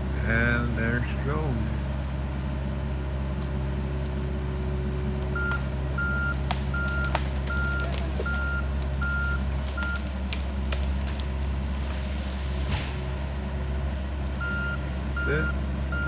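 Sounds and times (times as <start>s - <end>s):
diesel engine running: 0.0s - 16.0s
back-up alarm beeps: 5.4s - 10.0s, 14.4s - 16.0s
sharp knocks and cracks: 6.3s - 8.9s, 9.5s - 13.0s.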